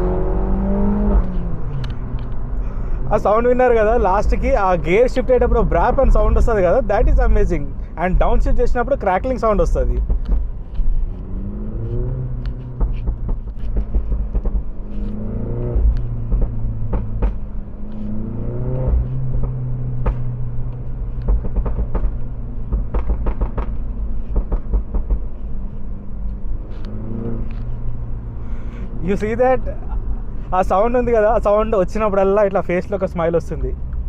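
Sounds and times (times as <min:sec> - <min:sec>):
car engine revving hard: 0:00.0 - 0:01.7, 0:17.8 - 0:20.0
exhaust pops and crackles: 0:01.0 - 0:34.0.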